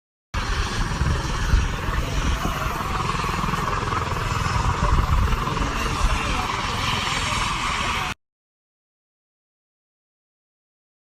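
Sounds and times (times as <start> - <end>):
helicopter rotor beating: 0.4 - 8.2.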